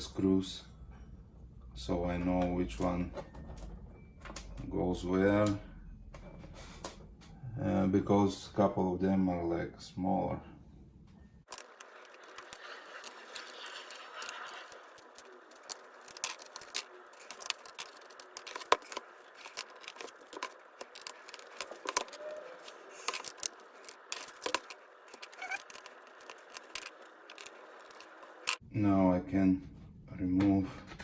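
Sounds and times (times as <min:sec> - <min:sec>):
screwdriver and screws clicking: 0:11.5 - 0:28.6.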